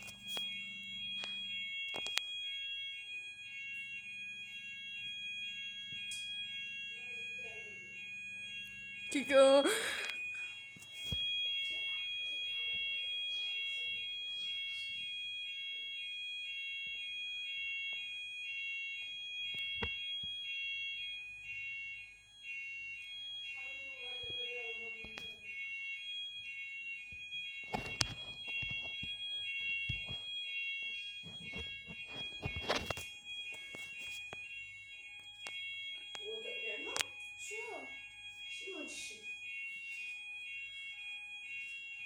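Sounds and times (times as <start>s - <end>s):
steady high tone: 0.0s - 14.4s
fire alarm two-pitch tone: 0.0s - 42.0s.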